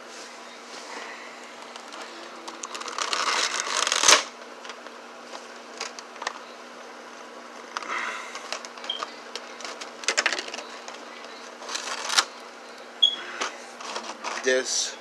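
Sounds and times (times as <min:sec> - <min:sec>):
packaging rustling and crinkling: 0:00.8 - 0:06.5, 0:07.5 - 0:12.4, 0:13.4 - 0:14.7.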